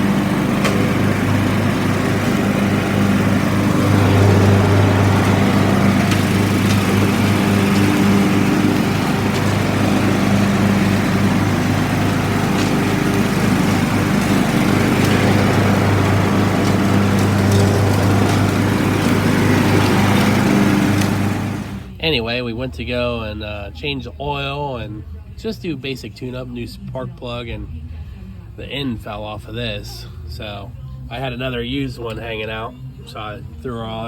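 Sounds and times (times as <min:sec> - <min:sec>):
lawn mower engine running: 0:00.0 - 0:21.9.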